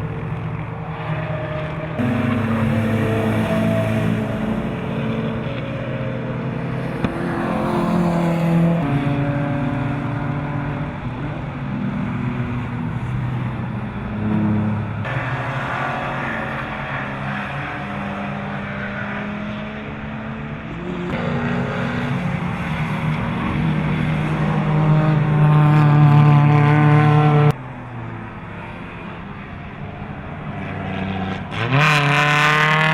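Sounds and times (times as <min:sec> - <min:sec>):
rally car engine revving: 0:01.6 - 0:12.2, 0:14.1 - 0:27.6, 0:30.6 - 0:32.9.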